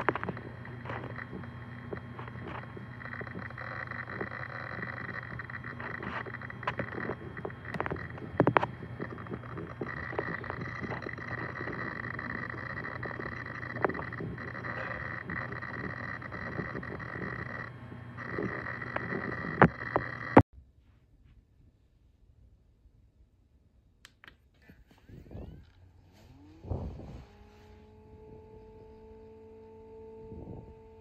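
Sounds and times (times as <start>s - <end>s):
hard disk seek clicks: 0.0s - 20.4s
hard disk hum and whine: 0.0s - 31.0s.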